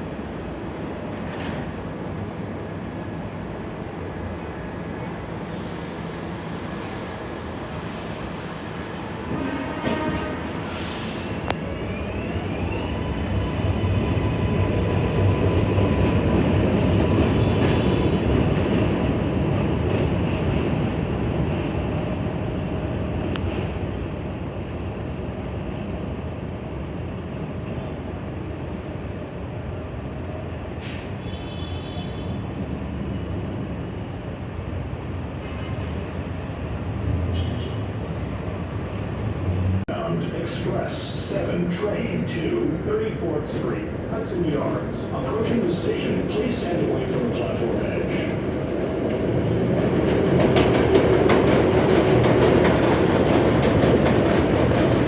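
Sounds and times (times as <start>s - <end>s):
train wheels rumbling on rails: 43.0s - 55.0s.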